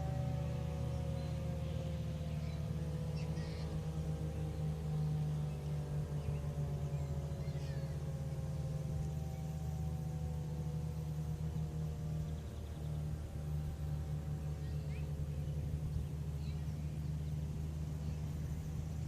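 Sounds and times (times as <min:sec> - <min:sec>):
two-tone siren winding down: 0:00.0 - 0:15.6
steady low rumble: 0:00.0 - 0:19.0
faint bird chirps: 0:00.9 - 0:04.7, 0:05.5 - 0:08.1, 0:14.4 - 0:18.9.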